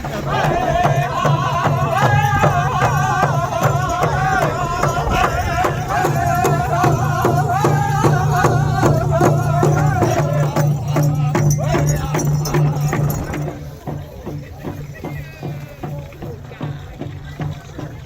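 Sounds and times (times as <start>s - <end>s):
steady drumbeat: 0.0s - 18.0s
voices singing: 0.0s - 18.0s.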